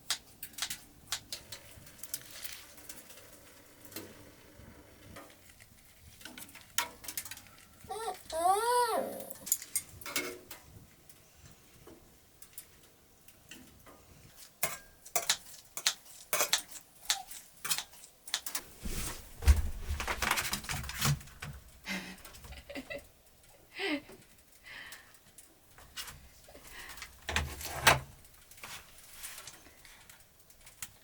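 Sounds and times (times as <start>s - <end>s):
heavy thump: 18.8s - 20.2s.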